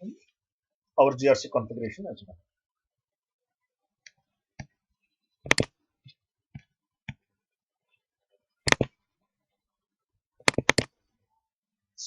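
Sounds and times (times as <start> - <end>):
computer mouse clicking: 5.5 - 5.8, 8.6 - 9.0, 10.4 - 11.0.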